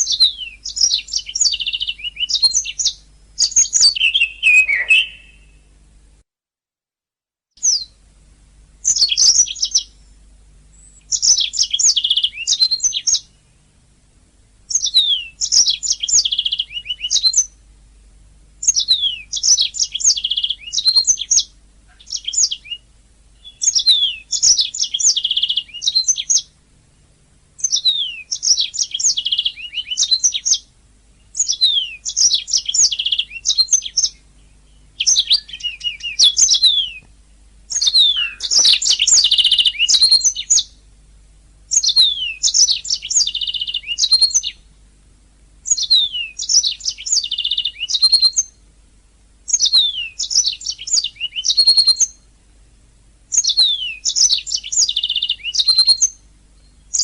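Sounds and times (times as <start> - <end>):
canary singing trills: 0.0 - 5.6, 7.6 - 8.0, 8.8 - 10.1, 10.7 - 13.6, 14.7 - 17.6, 18.6 - 26.6, 27.6 - 40.8, 41.7 - 44.7, 45.6 - 48.6, 49.5 - 52.3, 53.3 - 57.0.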